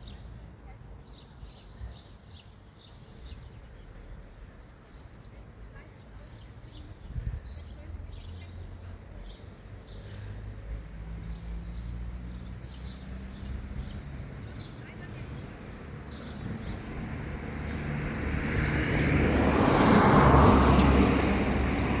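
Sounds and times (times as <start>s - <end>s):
small birds chirping: 0.0s - 22.0s
vehicle passing: 9.5s - 22.0s.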